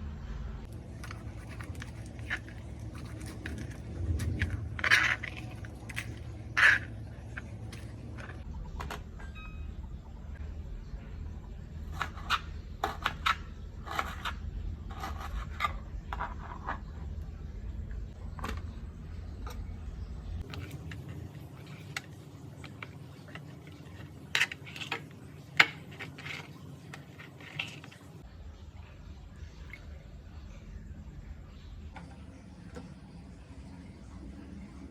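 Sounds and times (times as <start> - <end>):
low hum: 0.0 - 24.5, 26.4 - 34.9.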